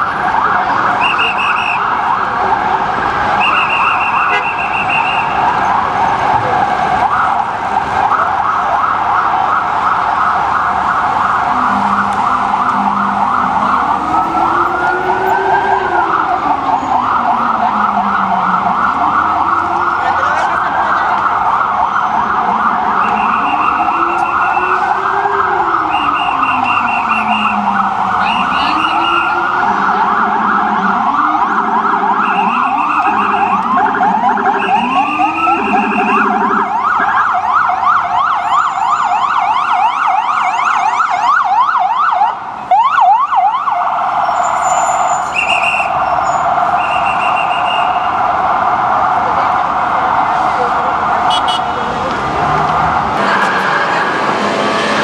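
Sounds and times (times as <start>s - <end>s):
ambulance siren wailing: 0.0s - 55.0s
low rumbler siren: 0.0s - 55.0s.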